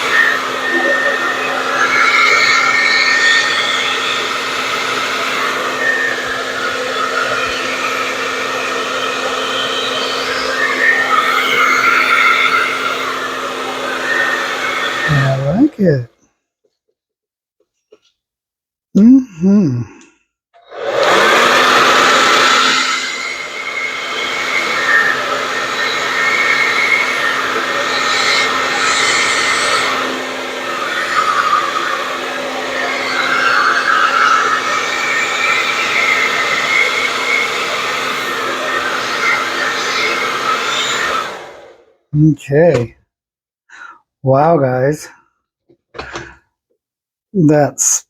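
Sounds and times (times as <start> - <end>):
blow dryer running: 0.0 - 16.0, 20.7 - 41.9.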